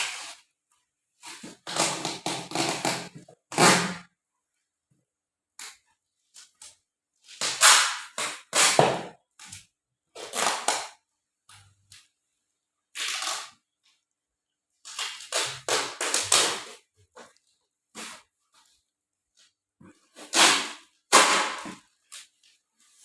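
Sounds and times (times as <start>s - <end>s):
plastic packaging ripping: 13.0s - 13.6s, 14.9s - 16.9s.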